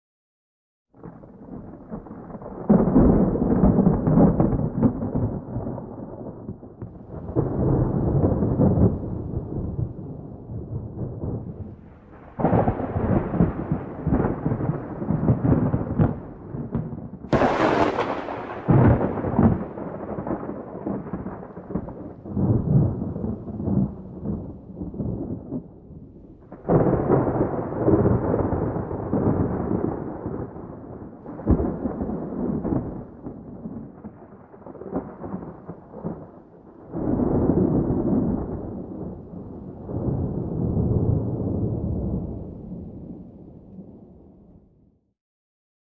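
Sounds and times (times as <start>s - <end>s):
rolling thunder: 1.0s - 44.7s
sharp thunder crack: 6.8s - 25.7s, 26.5s - 36.2s, 36.9s - 43.1s.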